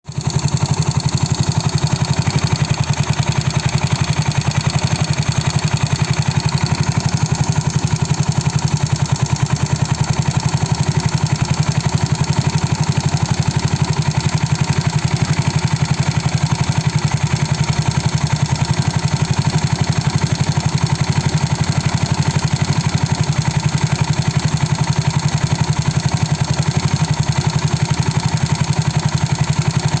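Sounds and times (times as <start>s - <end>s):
scooter engine idling with clatter: 0.0s - 30.0s.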